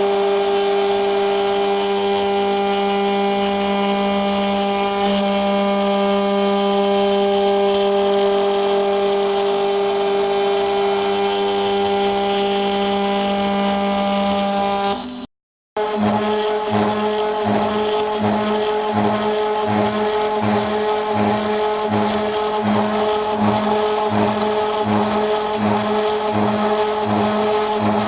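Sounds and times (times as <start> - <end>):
router spindle whine: 0.0 - 28.0
cutter chattering in metal: 15.8 - 28.0.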